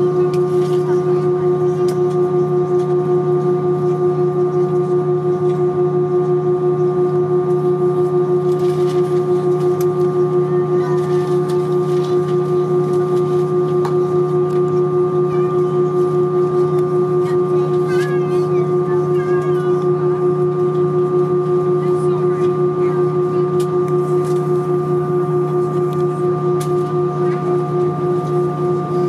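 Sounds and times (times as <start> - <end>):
airplane cabin drone: 0.0 - 29.0.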